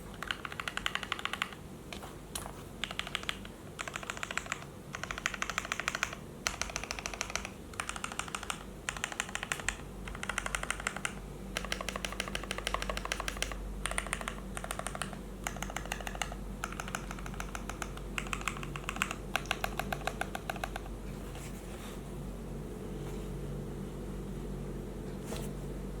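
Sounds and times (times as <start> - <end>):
low steady hum: 0.0 - 26.0
mechanical keyboard typing: 0.1 - 20.9.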